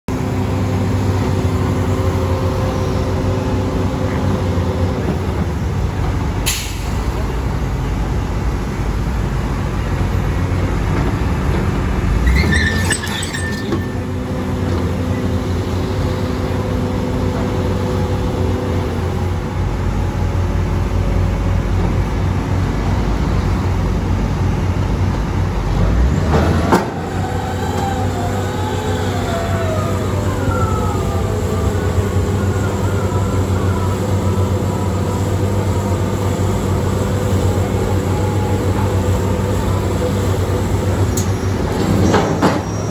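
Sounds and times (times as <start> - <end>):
diesel excavator running: 0.1 - 42.9
wavering high squeal: 12.2 - 14.3, 27.0 - 39.8.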